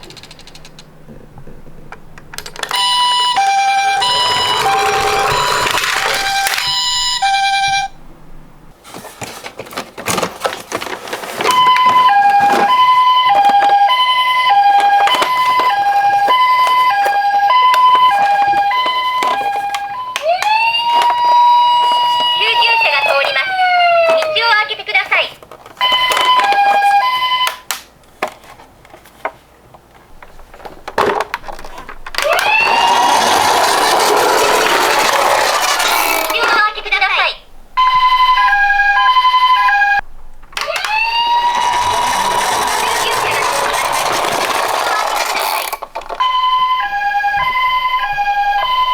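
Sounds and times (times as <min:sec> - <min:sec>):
plastic toy clicks and knocks: 0:00.0 - 0:00.9, 0:02.2 - 0:06.9, 0:14.7 - 0:28.6, 0:30.2 - 0:36.7, 0:40.4 - 0:46.3
toy siren two-tone call: 0:02.6 - 0:07.9, 0:11.5 - 0:25.0, 0:25.8 - 0:27.7, 0:32.2 - 0:36.8, 0:40.6 - 0:48.9.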